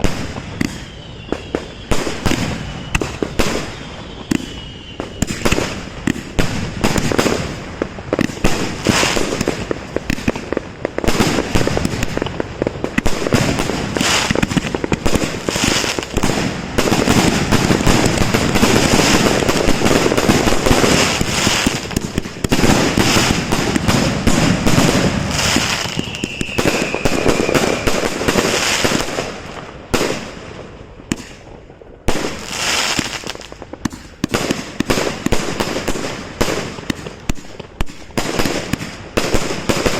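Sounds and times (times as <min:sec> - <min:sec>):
falling firework whistle: 0:00.0 - 0:07.4, 0:13.0 - 0:29.3
fireworks barrage crackling: 0:00.0 - 0:39.9.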